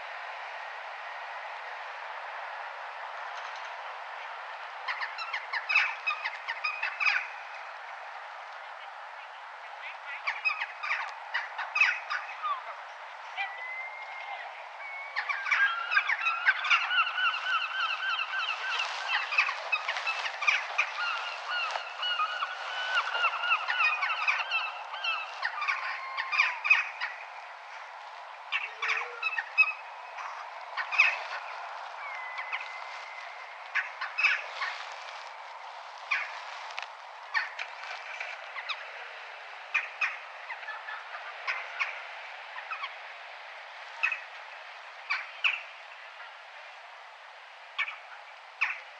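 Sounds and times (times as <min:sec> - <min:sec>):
faint town background noise: 0:00.0 - 0:48.9
crow cawing: 0:15.6 - 0:27.2.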